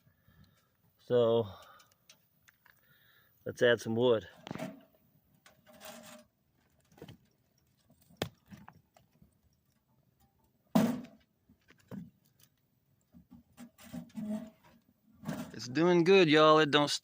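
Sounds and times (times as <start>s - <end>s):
firewood clanking into metal stove: 4.3s - 6.3s, 13.2s - 15.8s.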